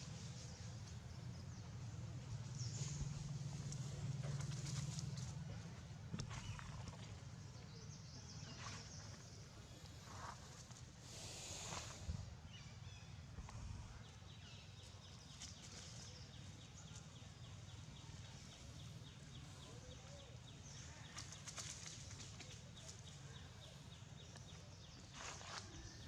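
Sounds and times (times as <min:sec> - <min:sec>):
steady low rumble: 0:00.0 - 0:15.2.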